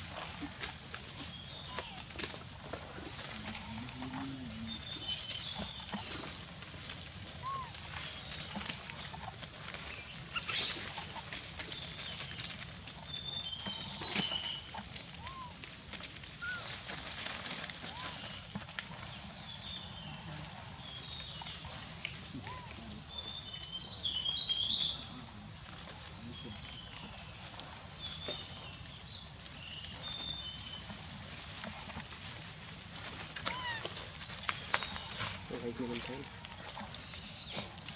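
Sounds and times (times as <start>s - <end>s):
low outdoor background noise: 0.0s - 37.9s
birds whistling calls: 13.4s - 15.6s, 33.5s - 35.2s.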